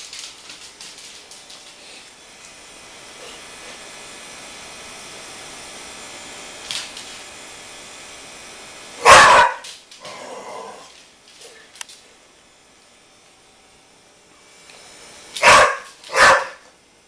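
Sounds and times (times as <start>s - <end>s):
dog barking: 9.0s - 9.6s, 15.4s - 16.6s.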